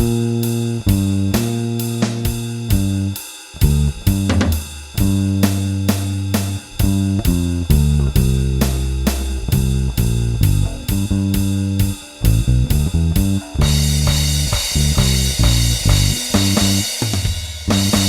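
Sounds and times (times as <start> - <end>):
electric bass guitar blues line: 0.0 - 16.9
drums steady beat: 0.0 - 18.0
cymbal strikes: 13.4 - 18.0.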